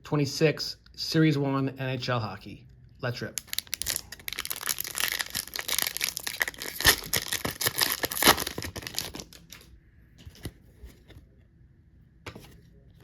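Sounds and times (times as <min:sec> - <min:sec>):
foil wrapper ripping and crinkling: 0:03.4 - 0:09.6.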